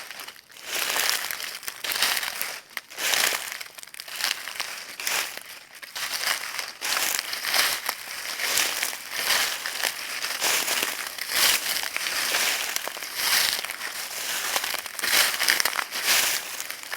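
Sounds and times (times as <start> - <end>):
footsteps on dry leaves: 0.0 - 16.9.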